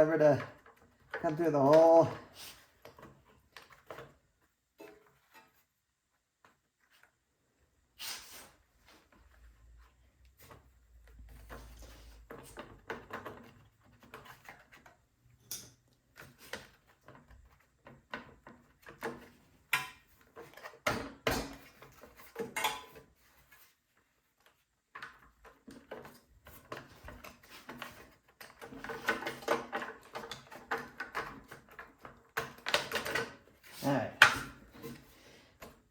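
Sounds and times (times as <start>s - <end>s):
metal parts and tools clinking: 22.4s - 23.0s.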